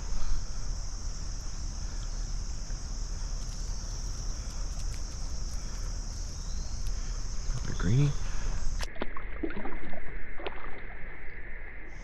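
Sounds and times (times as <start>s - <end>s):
insects chorus: 0.0s - 8.9s.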